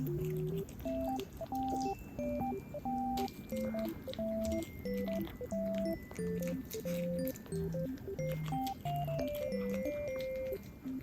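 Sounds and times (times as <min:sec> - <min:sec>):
light keyboard music with bass: 0:00.0 - 0:11.0.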